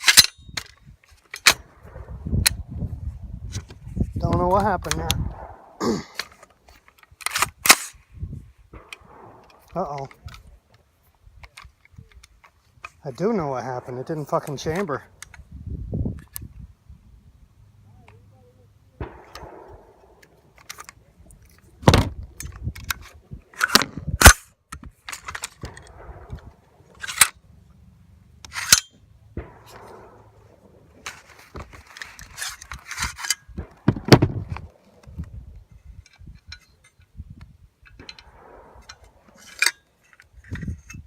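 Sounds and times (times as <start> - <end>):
sharp metallic clicks: 0.0 - 2.7, 8.7 - 10.8, 19.0 - 27.4
rustling: 28.4 - 37.0.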